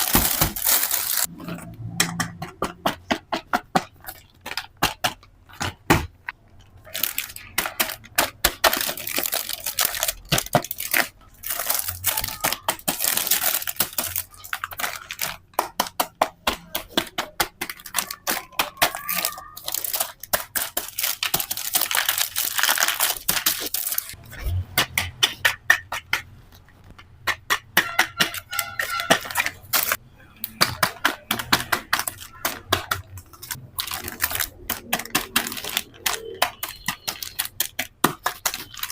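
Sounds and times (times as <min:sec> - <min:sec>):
plastic toy pieces clacking: 0:00.0 - 0:01.3, 0:03.7 - 0:24.2, 0:24.8 - 0:38.9
rustling and tearing: 0:00.0 - 0:01.3, 0:17.7 - 0:24.2, 0:32.0 - 0:36.5.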